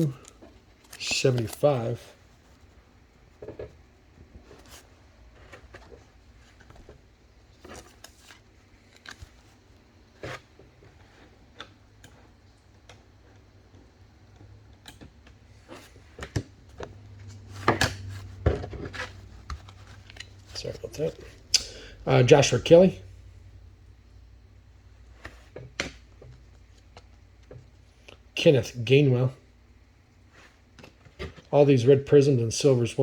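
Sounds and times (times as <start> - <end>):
trading cards being handled: 0.0 - 2.8, 15.7 - 22.8.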